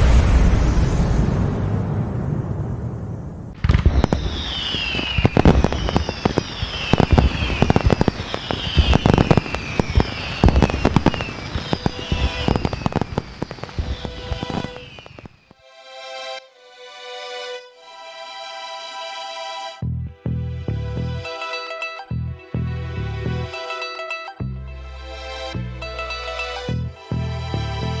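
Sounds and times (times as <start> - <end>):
fireworks bangs and crackles: 0.0 - 15.5
falling whistles: 3.8 - 15.5.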